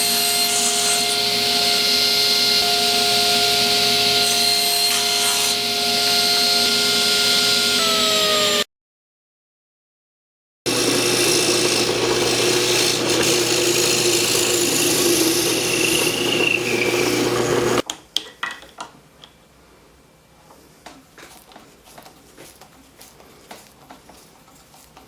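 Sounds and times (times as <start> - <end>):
power tool cutting wood: 0.0 - 8.7, 10.7 - 17.8.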